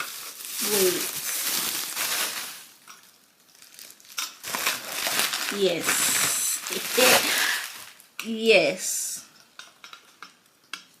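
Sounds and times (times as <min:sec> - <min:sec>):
packaging crinkling and rustling: 0:00.0 - 0:08.1.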